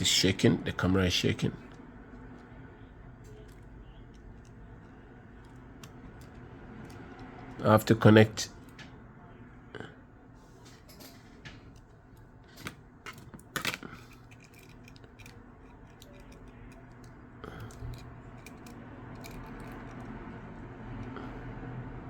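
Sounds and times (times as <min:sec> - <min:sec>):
low steady hum: 0:00.0 - 0:22.0
tools clicking on phone parts: 0:03.2 - 0:07.9, 0:10.8 - 0:20.2.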